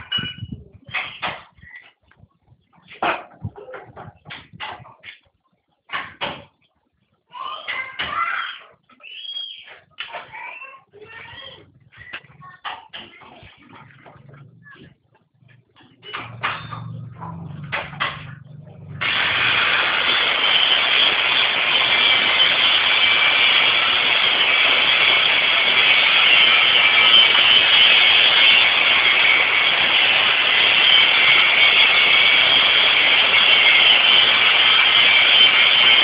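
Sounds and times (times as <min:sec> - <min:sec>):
low machine hum: 0:13.8 - 0:20.0
loud steady machine noise: 0:13.8 - 0:36.0.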